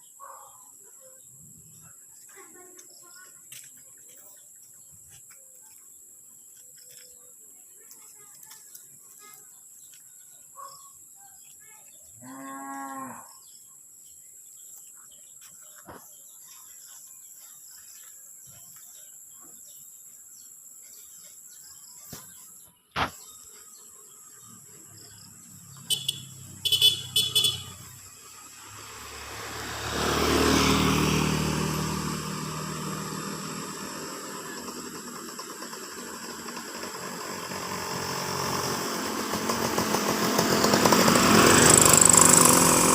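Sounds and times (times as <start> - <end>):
motor vehicle passing: 24.9 - 42.9.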